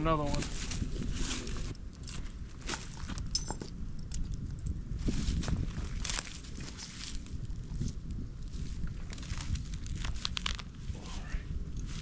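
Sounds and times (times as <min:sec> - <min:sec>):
wind buffeting microphone: 0:00.0 - 0:12.0.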